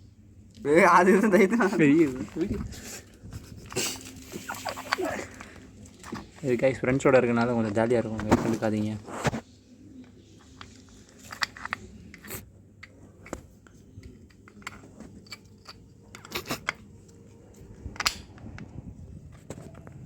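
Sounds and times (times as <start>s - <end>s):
metal tools clicking and clinking: 10.6s - 12.4s, 14.0s - 17.2s.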